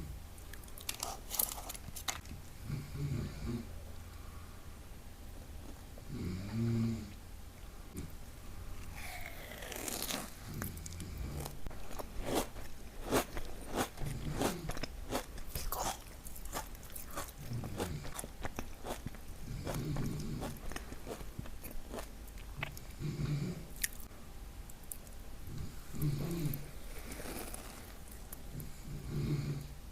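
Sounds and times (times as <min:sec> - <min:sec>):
crunchy cookie bites and chewing: 0:00.4 - 0:02.4, 0:08.8 - 0:23.0, 0:23.7 - 0:24.1, 0:26.0 - 0:28.7.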